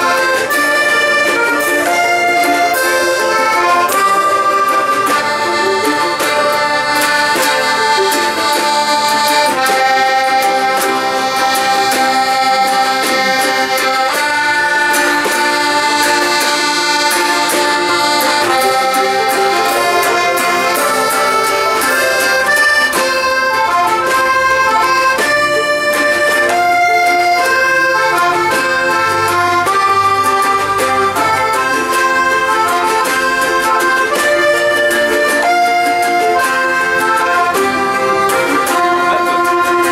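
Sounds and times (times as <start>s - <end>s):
folk band playing: 0.0s - 39.9s
squeezebox melody: 0.0s - 39.9s.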